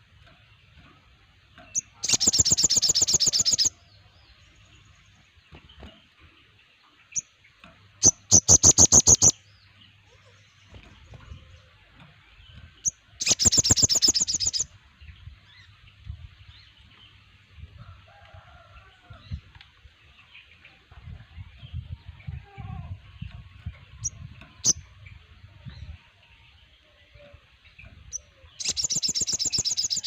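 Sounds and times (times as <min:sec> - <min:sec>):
other birds chattering: 0:00.0 - 0:03.8, 0:05.4 - 0:14.7
bird singing fast trills: 0:01.7 - 0:05.9, 0:08.0 - 0:15.9, 0:27.6 - 0:30.0.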